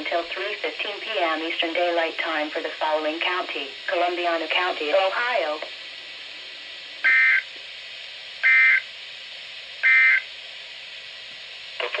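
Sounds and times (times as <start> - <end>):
steady hiss: 0.0 - 12.0
harsh two-tone digital screeches: 7.0 - 7.5, 8.4 - 8.8, 9.8 - 10.2.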